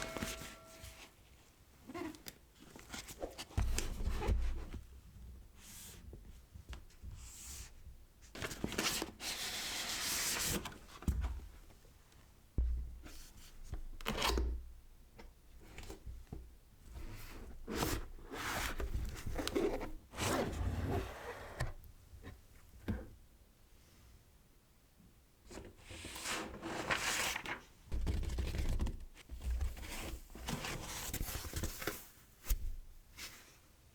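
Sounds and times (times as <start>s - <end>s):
soft thump: 12.6s - 13.1s.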